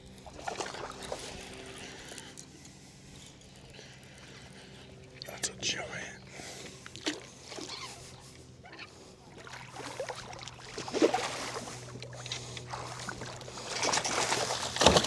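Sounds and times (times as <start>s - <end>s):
steady low hum: 0.0s - 15.0s
water splashes: 0.1s - 2.2s, 6.3s - 15.0s
knocks on boat: 14.8s - 15.0s.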